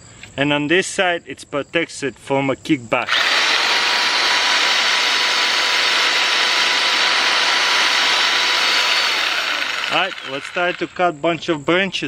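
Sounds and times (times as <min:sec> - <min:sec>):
electric chain lopper running: 0:03.1 - 0:11.0.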